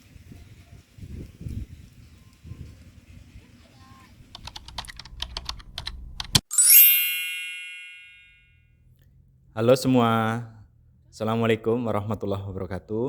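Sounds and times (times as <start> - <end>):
sharp typing clicks: 4.3 - 6.5
bell ding: 6.5 - 8.5.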